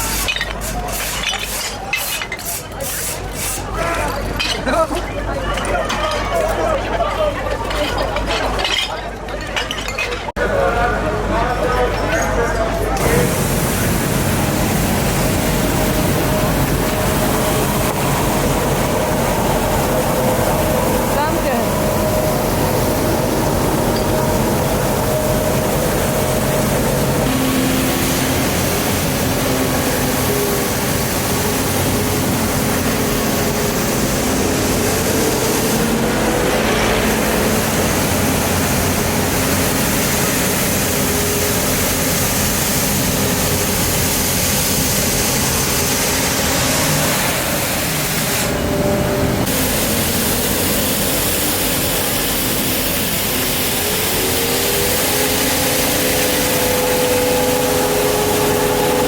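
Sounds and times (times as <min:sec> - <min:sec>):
vehicle engine running: 0:12.6 - 0:59.0
loud steady hiss: 0:13.0 - 0:59.0.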